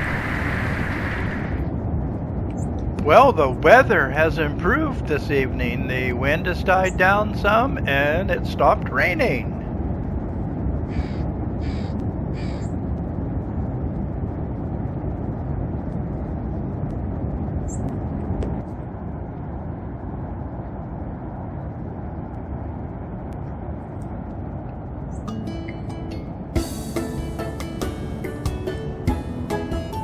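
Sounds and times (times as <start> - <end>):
low rushing background: 0.0 - 30.0
crow cawing: 10.9 - 12.7.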